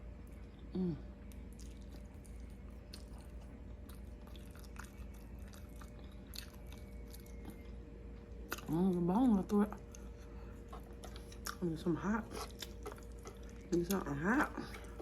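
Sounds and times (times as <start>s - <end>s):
chewing and gnawing: 0.2s - 15.0s
person humming mm: 0.7s - 1.2s.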